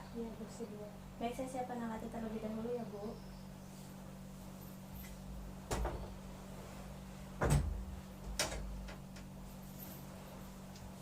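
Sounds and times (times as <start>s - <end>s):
steady low hum: 0.0s - 11.0s
equipment knocks and clunks: 5.7s - 6.1s, 7.4s - 9.0s.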